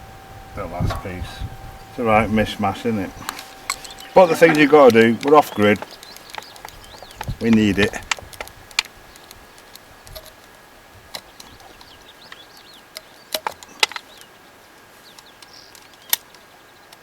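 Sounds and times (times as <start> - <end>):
faint bird chirps: 0.0 - 7.9.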